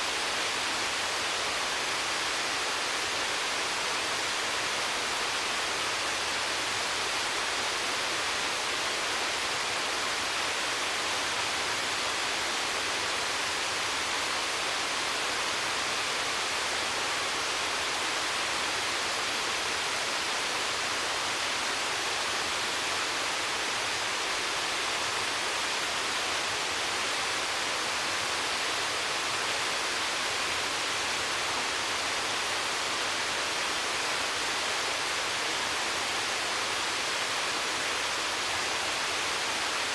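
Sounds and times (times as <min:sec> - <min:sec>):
waterfall splashing: 0:00.0 - 0:39.9.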